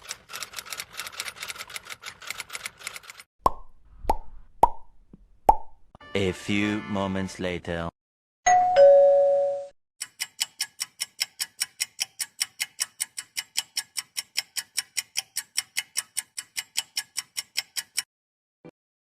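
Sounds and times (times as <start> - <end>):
two-note ding-dong chime: 8.5 - 9.7
clock ticking: 10.0 - 18.1.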